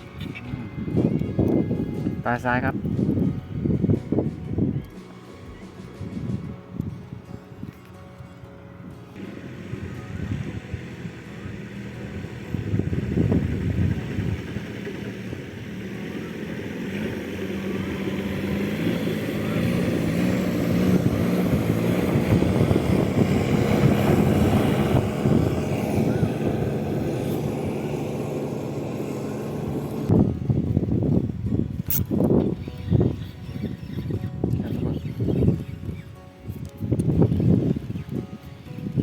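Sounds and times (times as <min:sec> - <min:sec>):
motor engine running: 0:09.0 - 0:31.1.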